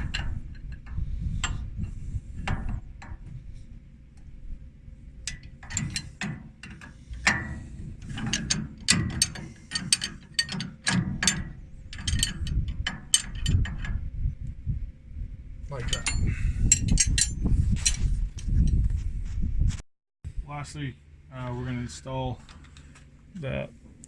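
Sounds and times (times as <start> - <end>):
wrench clicking and clanking on metal: 0.0 - 1.6, 5.3 - 14.0, 15.7 - 18.0.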